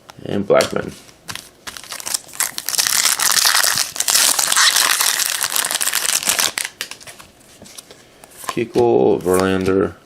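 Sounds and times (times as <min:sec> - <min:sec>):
foil wrapper crinkling: 0:01.3 - 0:07.2.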